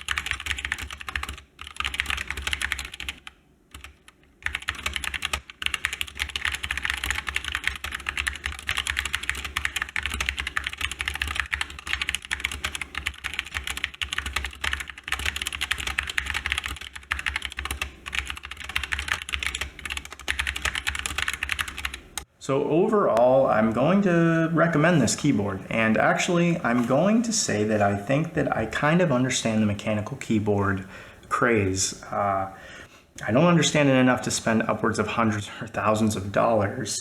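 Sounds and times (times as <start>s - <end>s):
mechanical keyboard typing: 0.0s - 22.3s.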